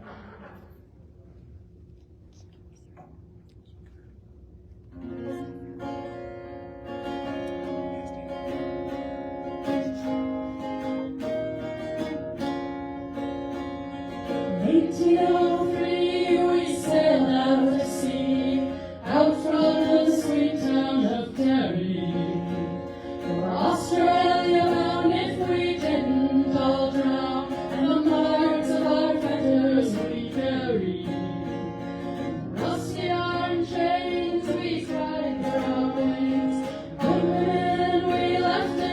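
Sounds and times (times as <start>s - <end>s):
plucked string instrument: 5.0s - 38.9s
voices singing together: 14.5s - 38.9s.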